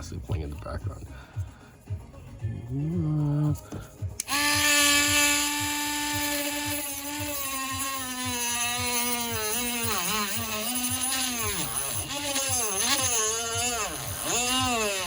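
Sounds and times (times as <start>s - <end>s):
rotary tool whining cutting plastic: 3.6s - 15.0s.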